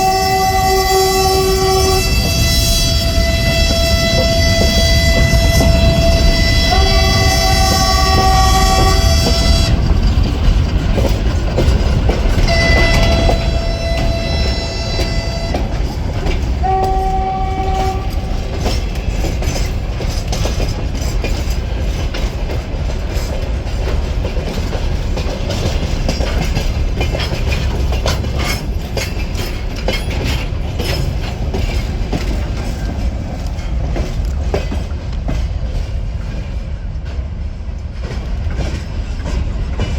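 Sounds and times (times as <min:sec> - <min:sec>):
locomotive horn blasts: 0:00.0 - 0:09.9, 0:12.4 - 0:18.7
train rolling rumble: 0:00.0 - 0:39.9
wheels clicking over rail joints: 0:00.0 - 0:39.9.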